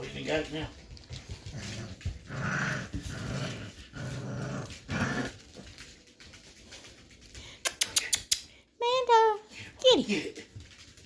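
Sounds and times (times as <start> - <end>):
puppy play-growling: 0.0 - 8.2.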